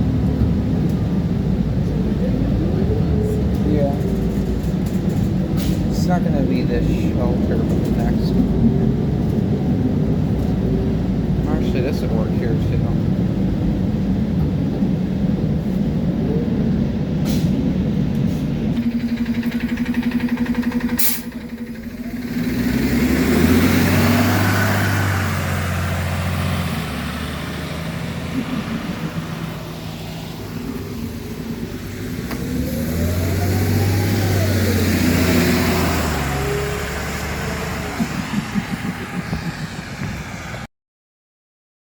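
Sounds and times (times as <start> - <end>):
bus engine accelerating: 0.0 - 40.7
engine whine: 0.0 - 40.7
sharp burst of noise: 18.8 - 40.7.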